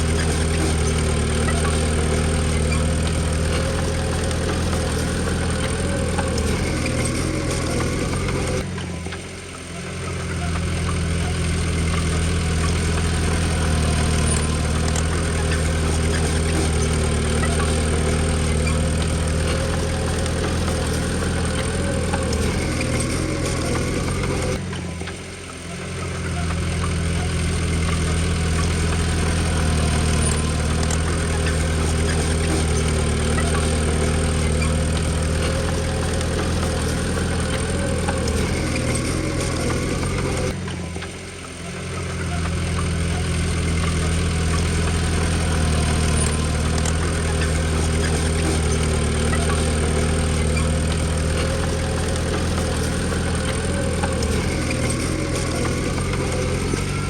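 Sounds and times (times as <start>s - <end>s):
diesel engine running: 0.0s - 57.0s.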